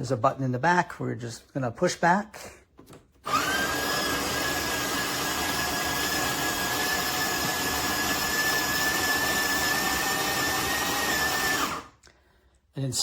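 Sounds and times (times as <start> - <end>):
coffee grinder grinding beans: 3.3 - 11.9.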